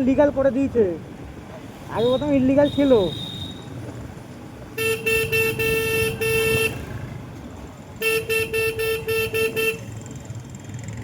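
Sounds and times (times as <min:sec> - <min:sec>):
vehicle horn short toots: 0:02.0 - 0:03.8, 0:04.8 - 0:06.9, 0:08.0 - 0:09.9.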